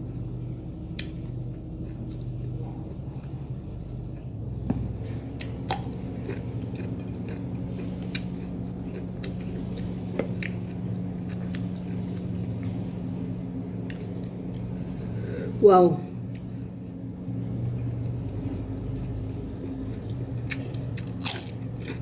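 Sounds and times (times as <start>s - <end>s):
person chewing food: 0.9s - 13.0s, 17.4s - 22.0s
crisp crunches: 21.0s - 22.0s.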